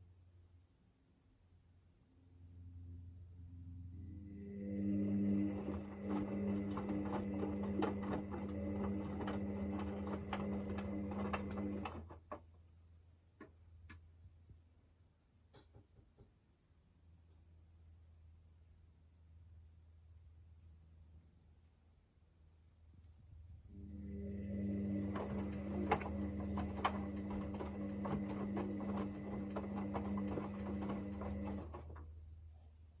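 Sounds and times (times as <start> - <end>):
washing machine motor humming: 4.0 - 12.4, 23.7 - 32.2.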